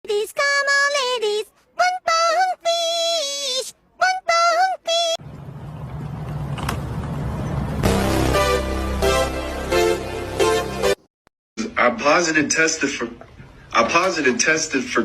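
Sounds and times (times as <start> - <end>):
rising rumbling noise: 5.2 - 9.7.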